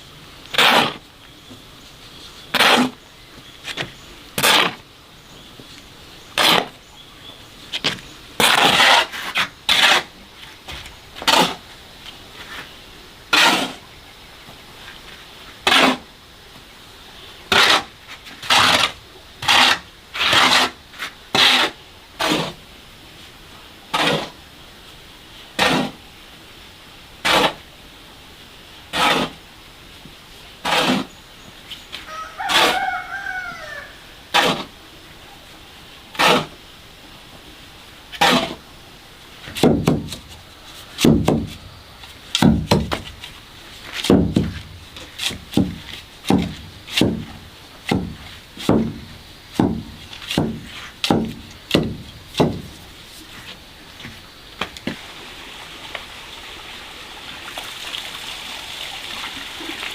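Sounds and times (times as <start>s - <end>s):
hand tool scraping: 0.5s - 1.0s, 2.2s - 3.0s, 3.7s - 4.8s, 6.4s - 6.8s, 7.7s - 11.7s, 13.3s - 13.8s, 15.6s - 16.1s, 17.5s - 22.6s, 23.9s - 24.4s, 25.6s - 26.0s, 27.2s - 27.6s, 28.9s - 29.4s, 30.6s - 32.9s, 34.3s - 34.7s, 36.1s - 36.6s, 38.1s - 38.6s, 39.4s - 55.0s.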